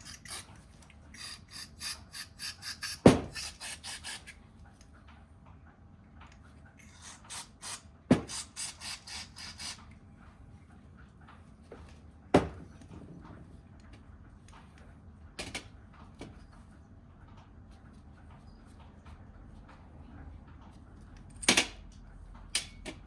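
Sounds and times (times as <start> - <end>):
hand tool scraping strokes: 0.0 - 4.4.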